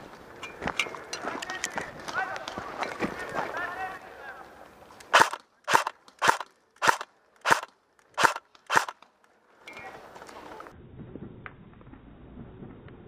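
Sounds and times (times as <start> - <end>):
sharp cracks: 5.0 - 10.5.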